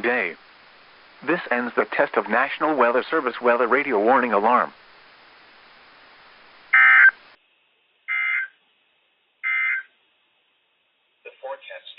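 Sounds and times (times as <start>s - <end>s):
faint radio hiss: 0.0s - 11.9s
digital data tone bursts: 6.7s - 7.2s.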